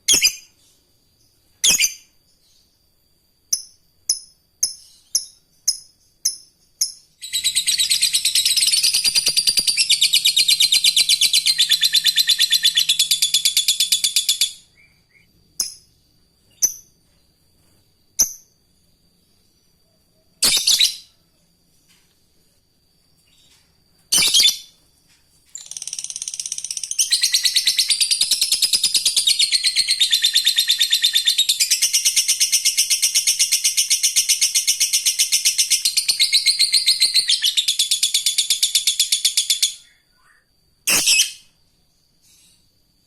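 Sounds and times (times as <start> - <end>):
lovebird chattering trill: 4.8 - 15.8, 25.6 - 41.4.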